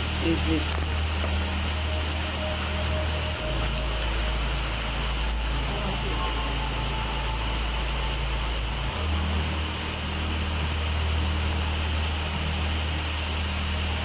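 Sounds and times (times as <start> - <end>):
heavy rain hiss: 0.0 - 14.0
low hum: 0.0 - 14.0.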